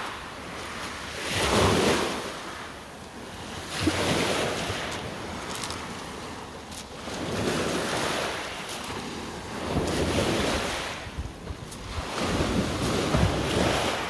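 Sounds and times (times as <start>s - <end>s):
waves breaking on shore: 0.0s - 14.0s
wind buffeting microphone: 7.0s - 14.0s.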